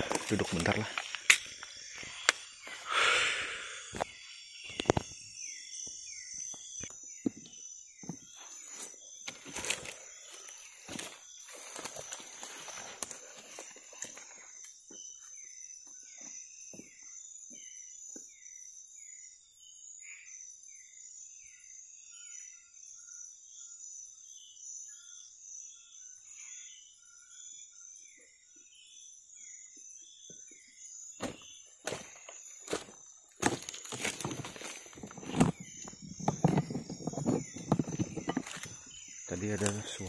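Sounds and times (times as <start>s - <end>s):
insect chorus drone: 0.0s - 40.0s
handling knocks: 31.2s - 32.0s, 33.4s - 38.8s.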